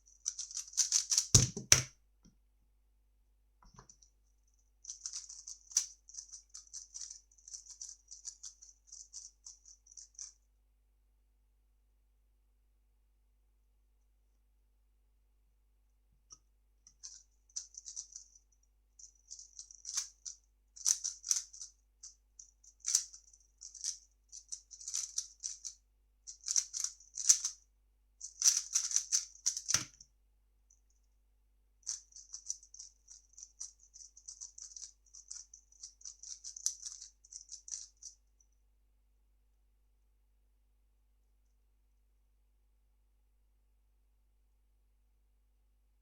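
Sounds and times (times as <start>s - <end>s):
puzzle cube plastic clicking: 0.3s - 1.9s, 28.4s - 30.0s.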